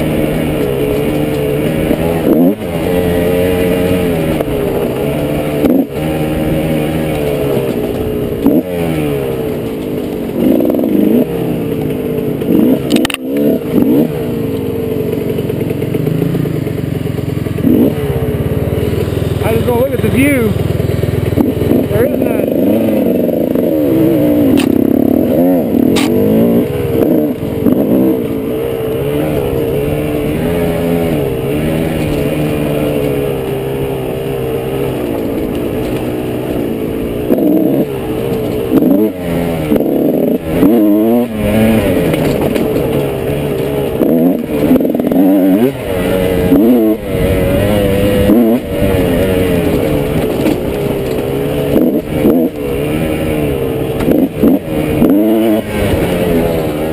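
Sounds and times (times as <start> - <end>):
motorcycle engine revving: 0.0 - 56.9.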